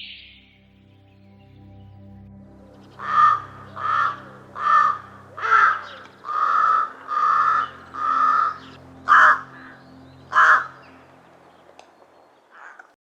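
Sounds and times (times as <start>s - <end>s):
crow cawing: 3.0s - 11.0s, 12.5s - 13.0s.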